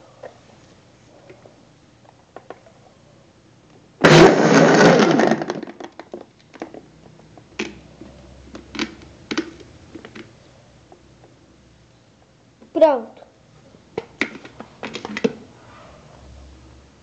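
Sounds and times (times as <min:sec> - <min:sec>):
blender crushing ice: 0:04.0 - 0:06.3.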